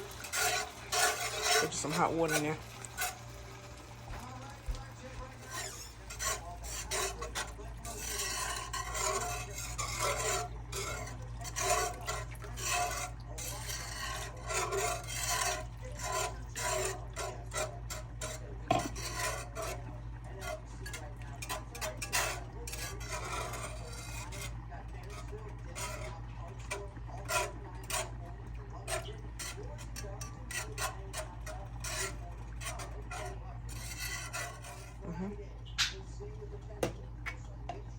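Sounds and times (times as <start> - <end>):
utensil scraping a pan: 0.0 - 35.2.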